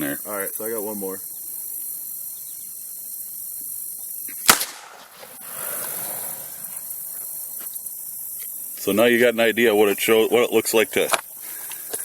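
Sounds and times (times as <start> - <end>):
revolver gunshot: 4.4 - 5.5.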